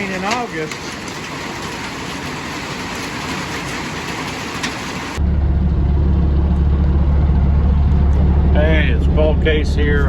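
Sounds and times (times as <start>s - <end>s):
hail ticks: 0.0s - 5.2s
heavy rain on roof: 0.0s - 5.2s
engine idling: 0.0s - 10.0s.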